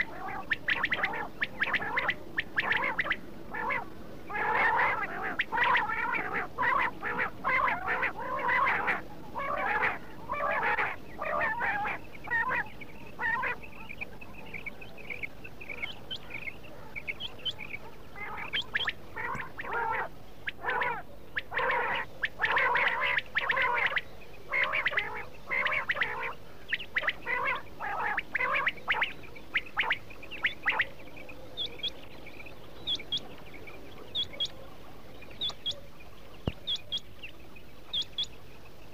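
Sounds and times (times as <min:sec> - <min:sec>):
quail calling: 0:00.0 - 0:31.0, 0:32.8 - 0:33.4, 0:34.0 - 0:34.7, 0:35.3 - 0:37.3, 0:37.9 - 0:38.4.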